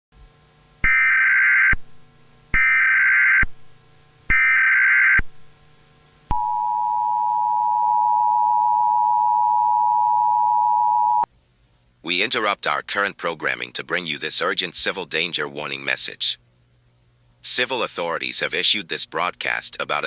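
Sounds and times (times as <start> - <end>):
data tone bursts: 6.3 - 11.3
two-tone attention signal: 6.3 - 11.3.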